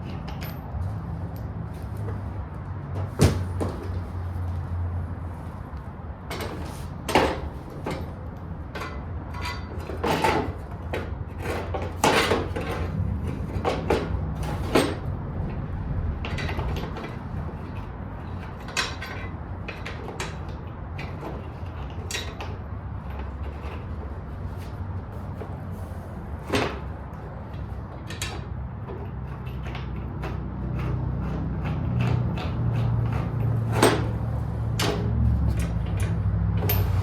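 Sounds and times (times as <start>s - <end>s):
metal parts clanking: 0.0s - 2.2s, 6.3s - 15.6s, 16.2s - 24.7s, 27.6s - 37.0s.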